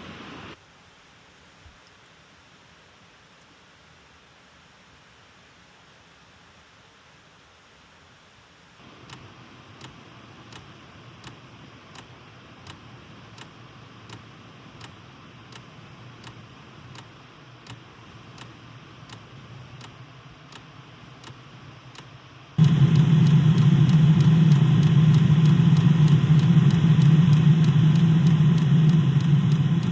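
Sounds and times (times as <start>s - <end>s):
heater blower humming: 0.0s - 0.6s, 8.8s - 29.9s
fuel pump ticking: 22.0s - 29.9s
loud low running sound: 22.6s - 29.9s.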